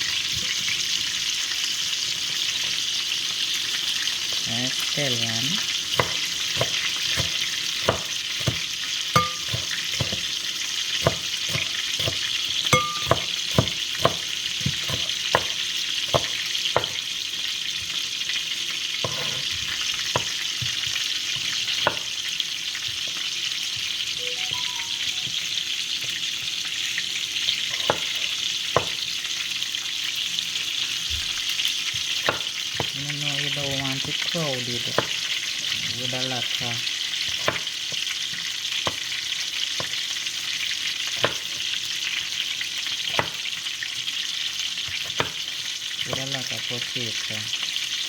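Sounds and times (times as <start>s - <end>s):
food sizzling in hot oil: 0.0s - 48.0s
spoon tapping and scraping pot: 5.9s - 17.0s, 27.7s - 29.0s.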